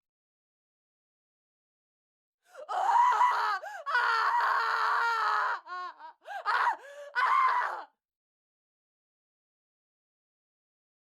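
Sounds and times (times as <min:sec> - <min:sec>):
person screaming: 0:02.6 - 0:07.9.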